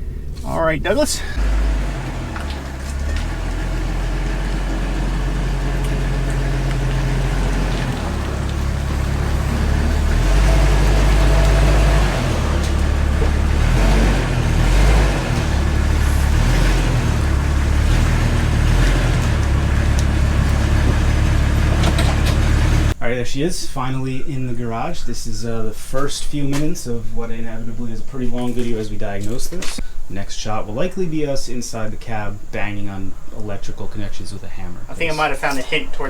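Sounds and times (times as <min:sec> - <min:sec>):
vehicle engine rumbling under load: 0:00.0 - 0:23.0, 0:31.3 - 0:36.0.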